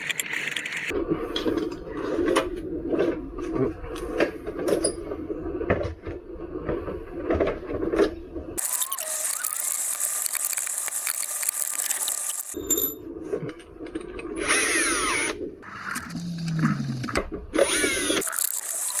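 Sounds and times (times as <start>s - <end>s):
power screwdriver driving screws: 14.4s - 19.0s.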